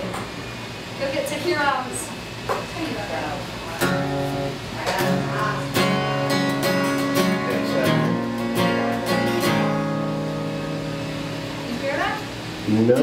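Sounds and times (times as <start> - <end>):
acoustic guitar strumming: 3.7 - 13.0.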